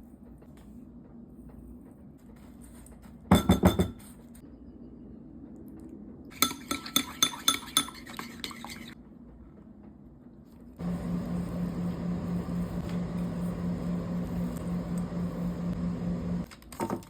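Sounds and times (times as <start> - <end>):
appliance humming: 10.8 - 16.5.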